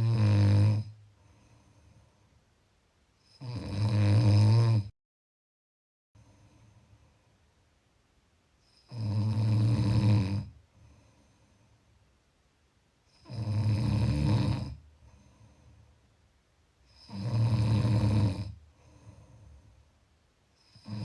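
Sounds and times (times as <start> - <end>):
deep snores: 0.0 - 1.0, 3.2 - 4.9, 8.7 - 11.0, 13.1 - 15.5, 16.9 - 19.5, 20.6 - 21.0
quiet breathing: 0.0 - 3.6, 6.2 - 7.7, 8.5 - 12.3, 13.0 - 21.0.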